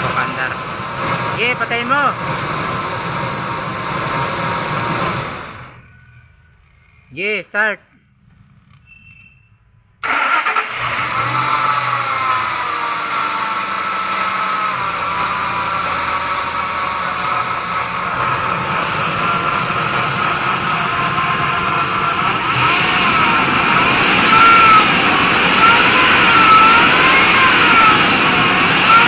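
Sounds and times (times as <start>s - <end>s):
car engine starting and running: 0.0s - 7.2s, 8.0s - 29.0s.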